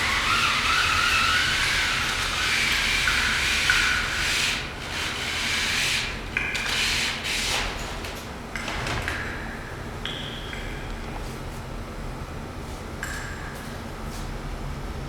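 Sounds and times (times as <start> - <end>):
ice scraping with squealing rasp: 0.0 - 4.4.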